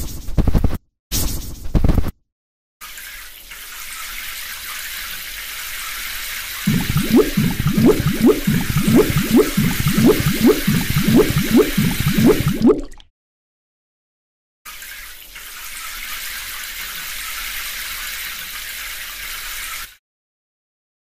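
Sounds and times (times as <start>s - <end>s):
rhythmic rising swishes: 6.7s - 12.8s.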